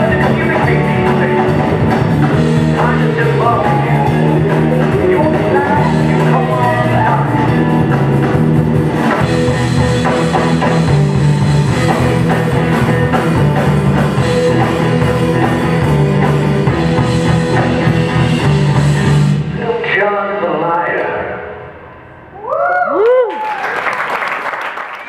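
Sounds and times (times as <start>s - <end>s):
live rock band playing: 0.0s - 19.8s.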